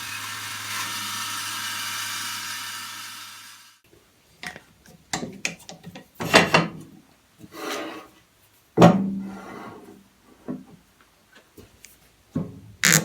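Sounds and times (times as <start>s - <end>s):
wood scraping on wood: 7.4s - 8.2s.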